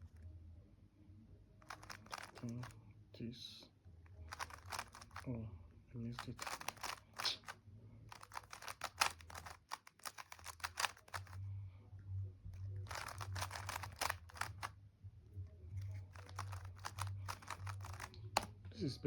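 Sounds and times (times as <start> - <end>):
puzzle cube clicking: 1.6 - 2.8, 4.3 - 5.3, 6.2 - 11.5, 12.8 - 14.7, 15.8 - 18.6.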